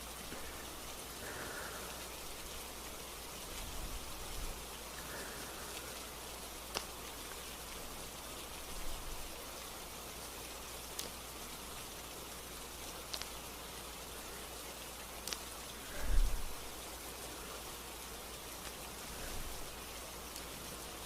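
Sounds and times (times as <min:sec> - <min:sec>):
gentle rain hiss: 0:00.0 - 0:21.0
faint sharp ticks: 0:06.7 - 0:07.4, 0:10.9 - 0:11.2, 0:13.1 - 0:13.4, 0:15.2 - 0:16.4, 0:20.3 - 0:20.5.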